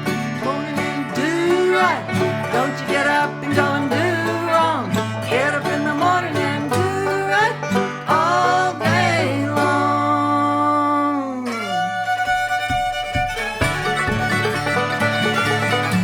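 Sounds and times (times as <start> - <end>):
bluegrass band playing: 0.0 - 16.0.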